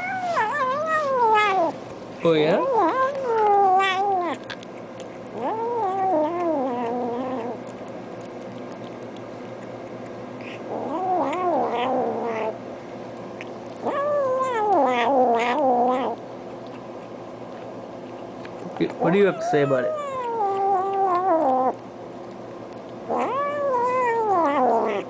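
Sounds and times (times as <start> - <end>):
cat yowling: 0.0 - 1.8, 2.6 - 4.5, 5.3 - 7.6, 10.4 - 12.6, 13.8 - 16.2, 19.0 - 21.8, 23.1 - 25.0.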